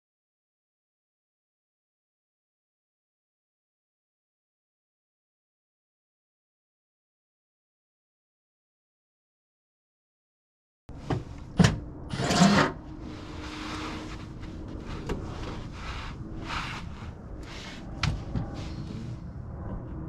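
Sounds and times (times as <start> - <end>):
low steady hum: 10.9 - 20.0
scraping rush: 12.2 - 19.3.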